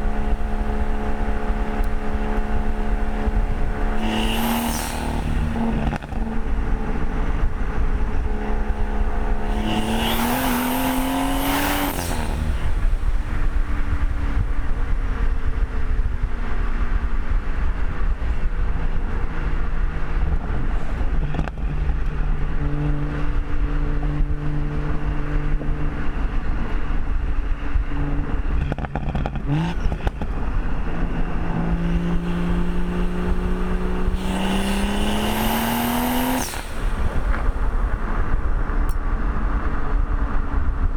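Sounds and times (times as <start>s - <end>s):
car engine revving: 0.0s - 27.0s, 27.8s - 40.9s
turbo hiss: 31.8s - 38.3s.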